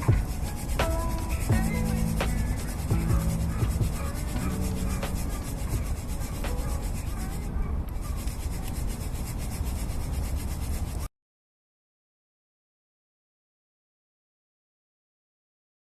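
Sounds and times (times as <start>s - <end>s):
low rumble: 1.5s - 6.1s.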